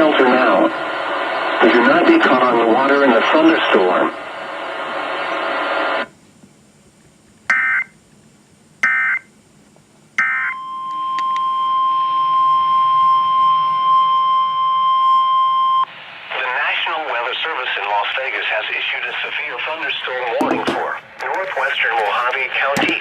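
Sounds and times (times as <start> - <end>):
steady warning alarm tone: 7.5 - 8.0, 8.8 - 9.3, 10.2 - 15.9.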